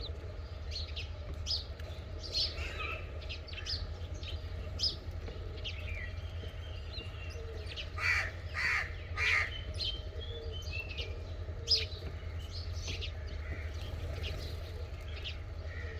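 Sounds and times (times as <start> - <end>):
small birds chirping: 0.0 - 15.9
steady low hum: 0.0 - 15.9
crow cawing: 8.0 - 9.5.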